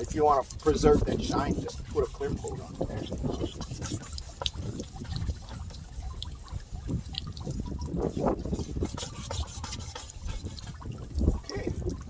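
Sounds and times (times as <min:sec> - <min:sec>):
water dripping and trickling: 0:00.0 - 0:12.0.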